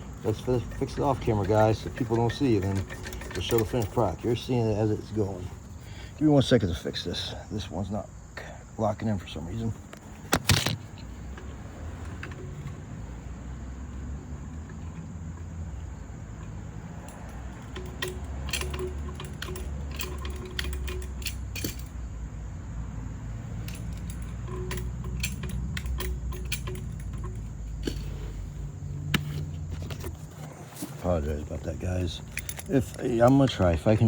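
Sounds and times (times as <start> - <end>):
light metallic clinks and clicks: 0.0 - 5.8, 9.6 - 12.9, 13.9 - 22.1, 23.5 - 34.0
low rumble of phone handling: 9.8 - 13.2, 23.5 - 34.0.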